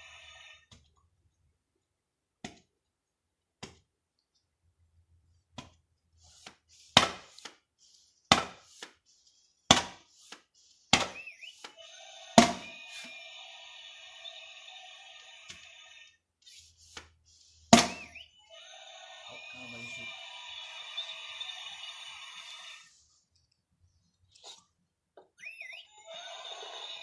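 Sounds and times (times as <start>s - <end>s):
toy gun sharp knocks: 7.0s - 7.5s, 8.3s - 8.9s, 17.7s - 18.1s.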